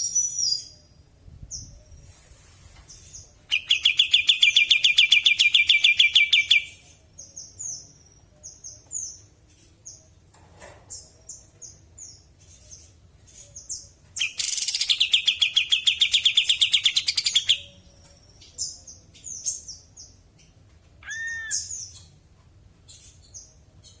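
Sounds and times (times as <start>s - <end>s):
bird high downslurred notes: 21.0s - 21.8s.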